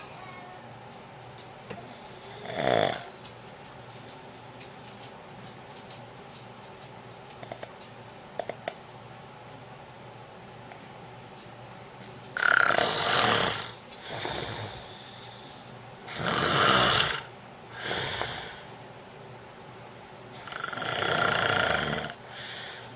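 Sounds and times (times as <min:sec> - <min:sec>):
man snoring: 0:02.4 - 0:03.1, 0:12.4 - 0:14.9, 0:16.1 - 0:18.6, 0:20.4 - 0:22.2.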